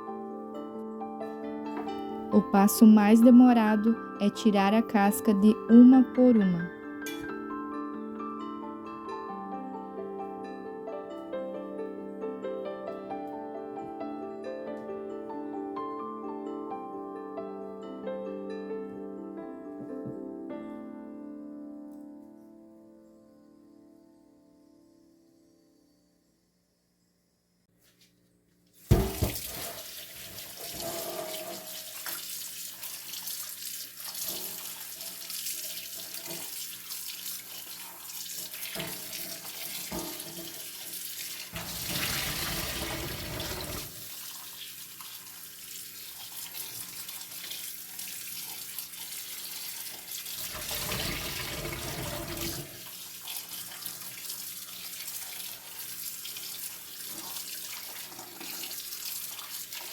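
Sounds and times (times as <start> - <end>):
tap water running into sink: 28.8 - 59.9.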